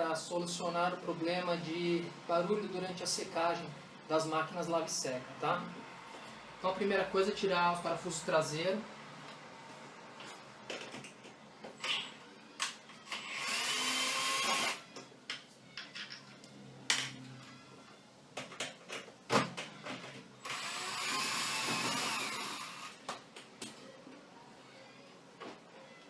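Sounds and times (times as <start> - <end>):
electric screwdriver running: 13.1 - 14.8, 20.4 - 23.0
screws and tool clicking: 13.1 - 14.8, 20.5 - 22.9.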